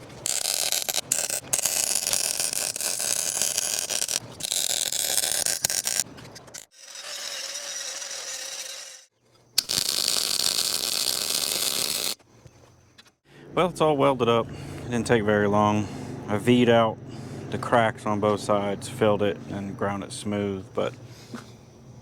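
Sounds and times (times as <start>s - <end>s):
welding crackling hiss: 9.6s - 12.2s.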